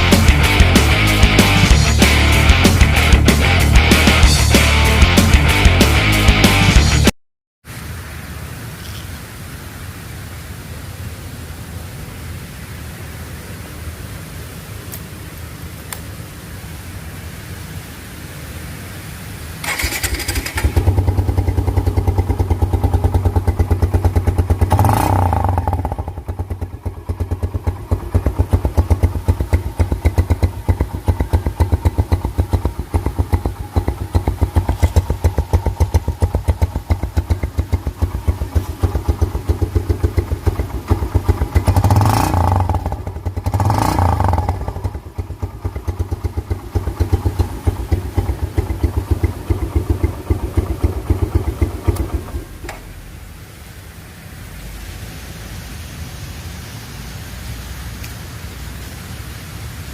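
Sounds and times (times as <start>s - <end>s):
motorcycle engine idling and revving: 0.0s - 7.2s, 19.6s - 53.5s.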